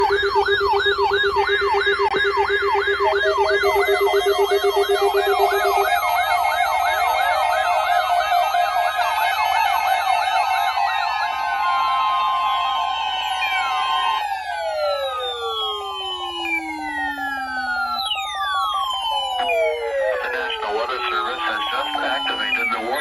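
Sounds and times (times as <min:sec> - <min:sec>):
fast warbling siren: 0:00.0 - 0:23.0
low rapid beeping: 0:15.0 - 0:23.0.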